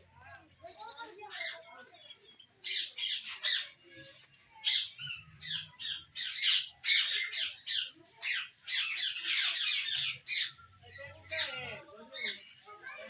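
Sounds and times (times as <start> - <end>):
parrots squawking: 4.6 - 10.6.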